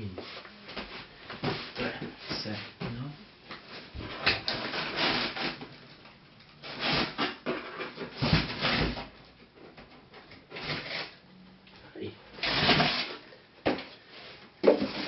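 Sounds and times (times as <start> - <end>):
cardboard scraping and rustling: 14.7 - 15.0.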